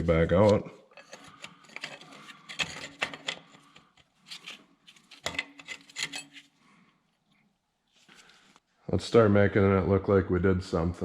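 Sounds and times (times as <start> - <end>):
metal tools clinking and knocking: 0.9 - 4.0, 5.2 - 6.4.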